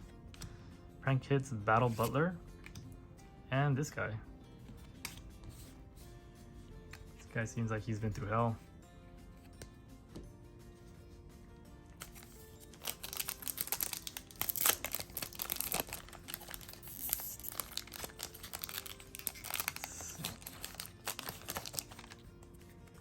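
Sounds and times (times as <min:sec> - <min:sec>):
foil wrapper crinkling and tearing: 0:12.0 - 0:23.0.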